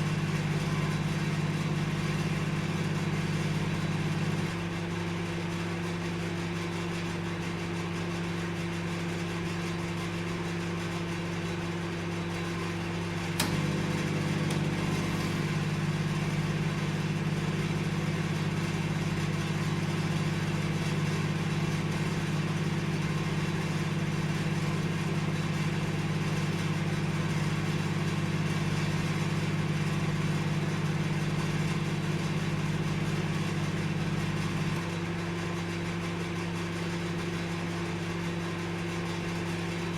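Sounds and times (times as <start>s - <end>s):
microwave oven humming: 0.0s - 39.9s
click: 13.4s - 13.7s.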